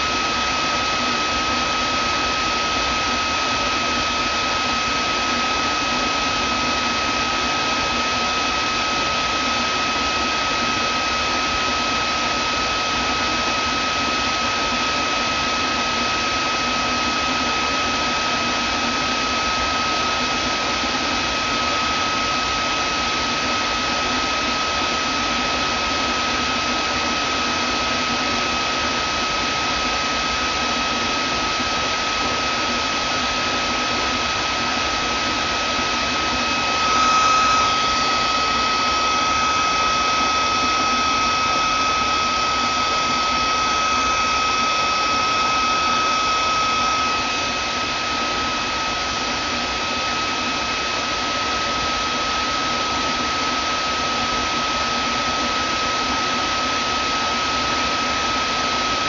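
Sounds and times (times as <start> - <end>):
vacuum cleaner motor running: 0.0 - 59.0
second higher whine: 34.2 - 50.4.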